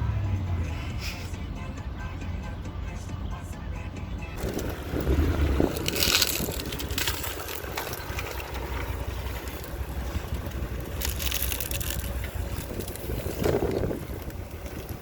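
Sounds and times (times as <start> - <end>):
off-road vehicle engine under load: 0.0 - 15.0
crunching bursts: 4.4 - 15.0.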